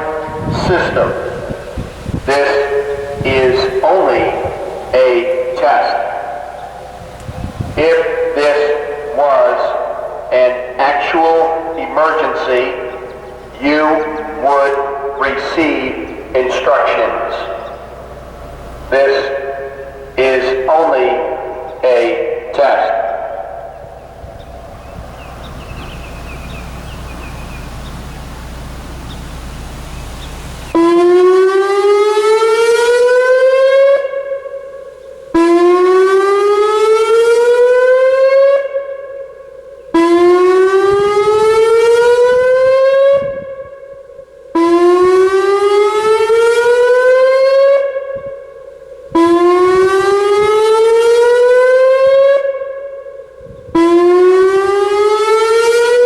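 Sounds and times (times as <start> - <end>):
low background noise: 0.0 - 32.5
warning siren whooping: 0.0 - 56.0.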